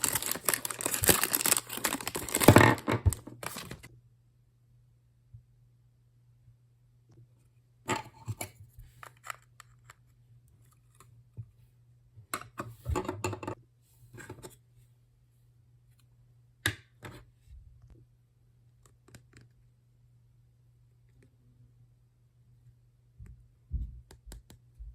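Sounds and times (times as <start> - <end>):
packaging crinkling and clicking: 0.0 - 3.9.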